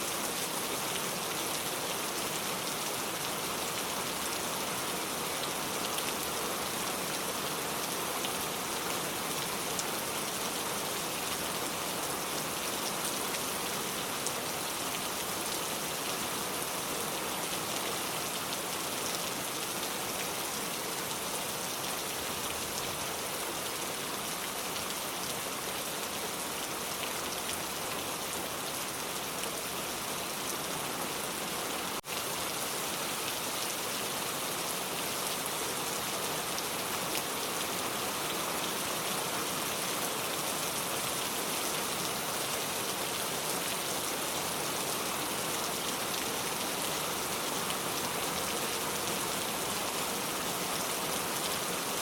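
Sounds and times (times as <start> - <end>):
steady rain falling: 0.0 - 52.0.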